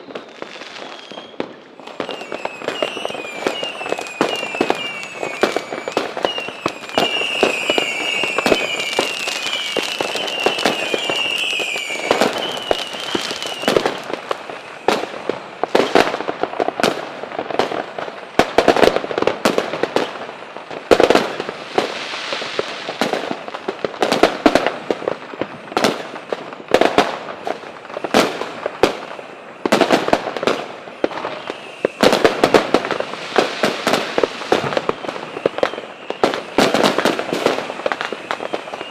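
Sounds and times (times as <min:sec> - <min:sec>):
fireworks and firecrackers banging: 0:00.0 - 0:38.9
high warbling whistle: 0:00.3 - 0:13.9.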